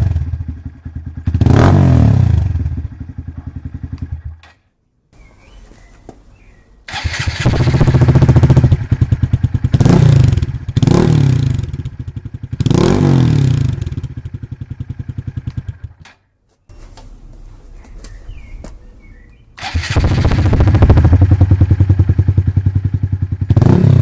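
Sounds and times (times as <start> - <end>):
motorcycle engine revving: 0.0 - 4.4, 6.9 - 16.1, 19.6 - 24.0
faint bird chirps: 5.2 - 6.8, 17.7 - 19.6.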